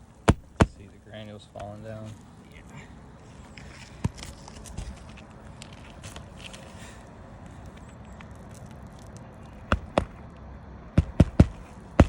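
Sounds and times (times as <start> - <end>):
outdoor background noise: 0.0 - 12.0
sharp knocks on a roof: 0.3 - 0.8, 9.7 - 10.2, 11.0 - 12.0.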